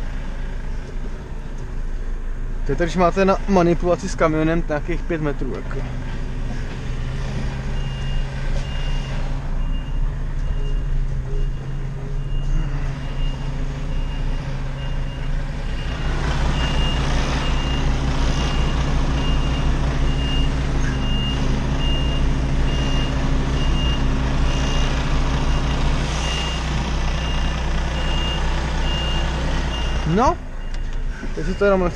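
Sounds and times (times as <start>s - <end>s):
diesel engine running: 0.0s - 31.9s
reversing alarm beeps: 7.7s - 31.9s.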